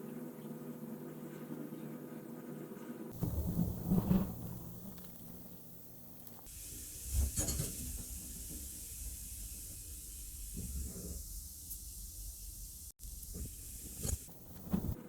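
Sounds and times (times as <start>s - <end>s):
hot metal sizzling: 3.1s - 15.0s.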